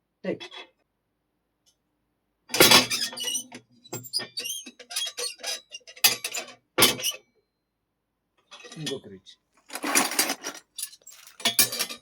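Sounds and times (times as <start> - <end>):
metal gate clanking and rattling: 9.8 - 12.0.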